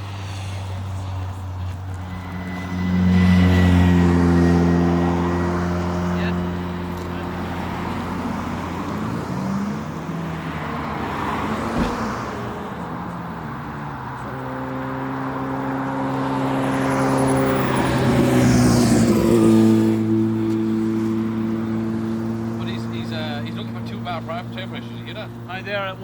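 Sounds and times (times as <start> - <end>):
car driving past: 0.0 - 25.6
steady engine hum: 0.0 - 26.0
engine idling: 19.9 - 26.0.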